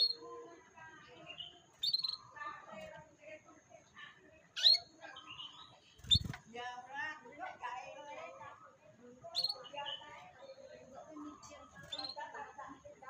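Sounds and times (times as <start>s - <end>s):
canary singing: 0.0s - 0.3s, 1.2s - 2.4s, 4.5s - 6.4s, 9.2s - 10.7s, 11.3s - 12.3s.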